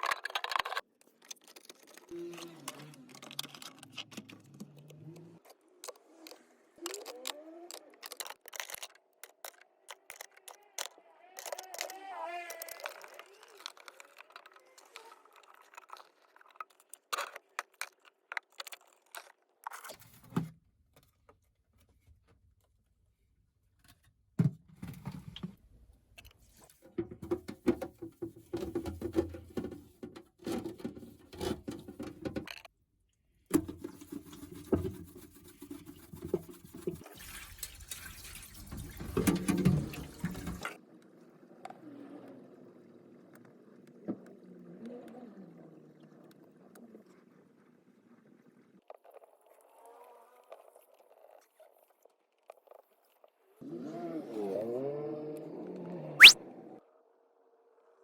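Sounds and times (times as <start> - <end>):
water running and splashing: 35.4 - 40.6.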